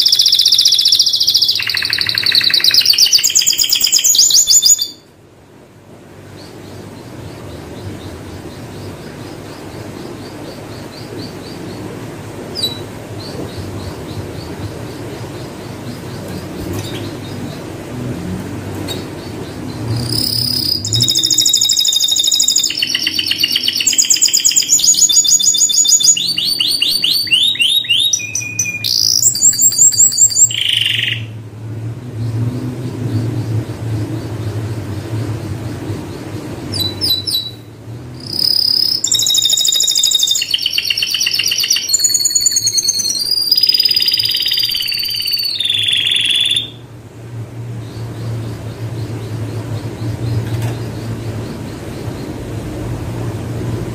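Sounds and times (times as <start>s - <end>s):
canary singing trills: 0.0s - 5.1s, 5.8s - 53.9s.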